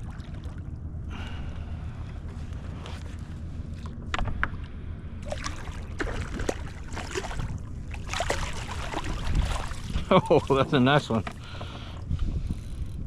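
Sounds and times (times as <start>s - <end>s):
water splashing: 0.0s - 0.8s, 5.2s - 11.5s
wind on microphone: 8.7s - 10.7s, 11.8s - 13.0s.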